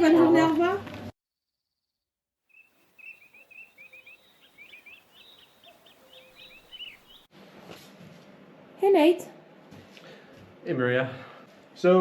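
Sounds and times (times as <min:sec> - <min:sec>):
small songbird singing: 0:01.7 - 0:07.3
faint outdoor background noise: 0:02.5 - 0:12.0.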